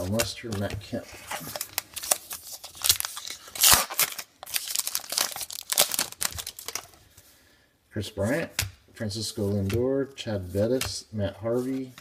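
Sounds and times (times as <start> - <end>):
card pack wrapper crinkling: 1.3 - 7.0
wrapper ripping: 1.3 - 7.0.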